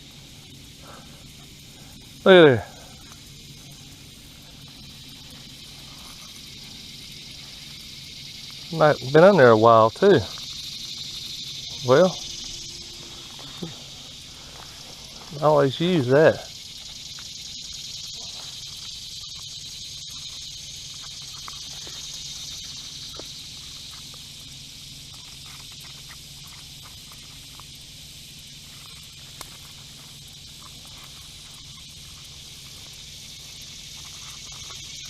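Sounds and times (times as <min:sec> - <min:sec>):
insect chorus droning: 0:00.0 - 0:35.0
low hum: 0:09.9 - 0:25.2.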